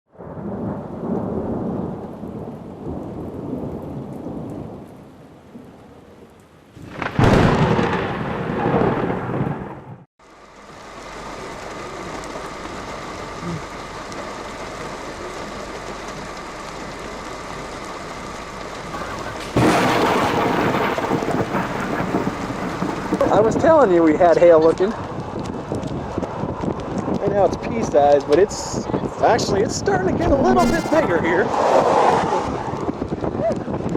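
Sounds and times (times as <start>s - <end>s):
loud thunderclap: 0.2s - 4.8s, 6.8s - 10.1s, 18.9s - 24.3s, 29.1s - 33.9s
thunder rumbling: 0.2s - 4.9s, 6.8s - 10.1s, 11.2s - 33.9s
steady rain: 0.2s - 33.9s.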